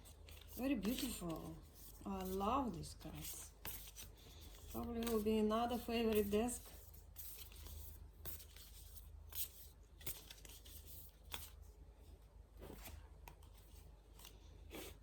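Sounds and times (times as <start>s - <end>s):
cards rustling and tapping: 0.0s - 15.0s.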